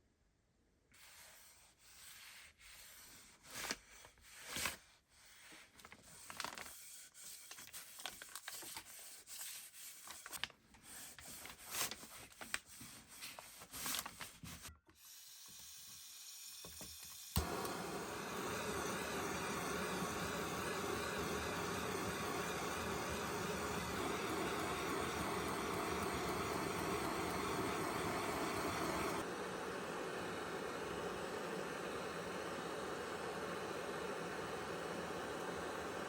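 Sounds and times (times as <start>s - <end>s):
steady hiss: 17.4s - 36.0s.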